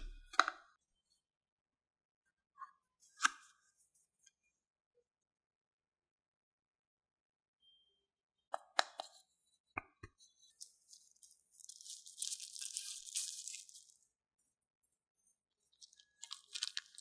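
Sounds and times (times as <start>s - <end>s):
packaging rustling and tearing: 10.8s - 14.0s, 15.8s - 17.0s.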